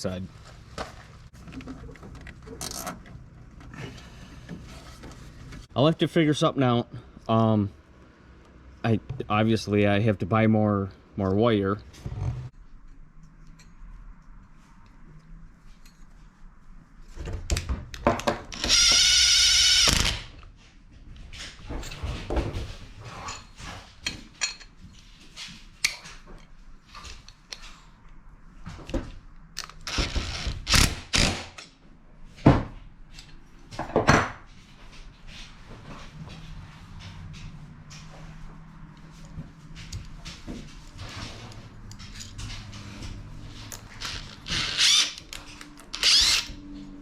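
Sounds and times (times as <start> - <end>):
tools and hardware clattering: 0.9 - 3.2.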